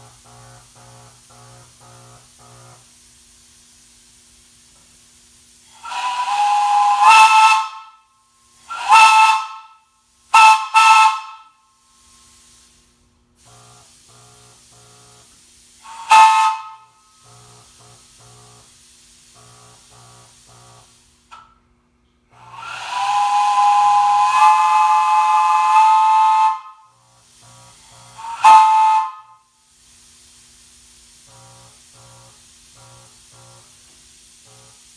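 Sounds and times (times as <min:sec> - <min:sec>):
air hissing: 0:00.0 - 0:21.6, 0:22.3 - 0:34.9
steam whistle blasts: 0:05.6 - 0:12.6, 0:13.4 - 0:18.7, 0:22.3 - 0:29.7.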